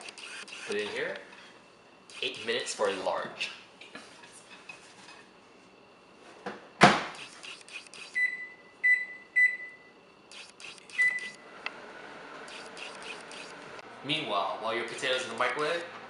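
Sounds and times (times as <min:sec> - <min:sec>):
keypad beeps: 0:08.0 - 0:09.8, 0:10.7 - 0:11.4
microwave oven humming: 0:08.0 - 0:16.0.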